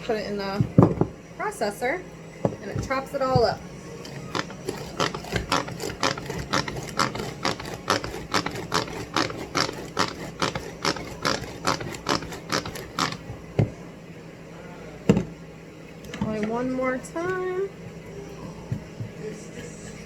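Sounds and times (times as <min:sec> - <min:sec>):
food processor clicking: 0:04.0 - 0:13.2.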